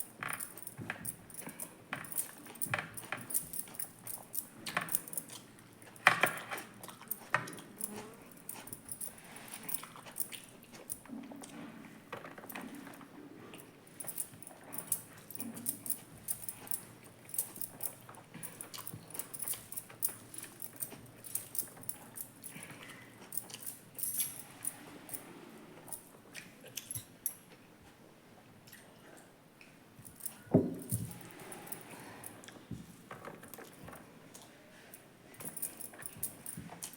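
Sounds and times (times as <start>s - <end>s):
person chewing food: 2.3s - 9.0s, 9.6s - 11.5s, 22.3s - 23.9s.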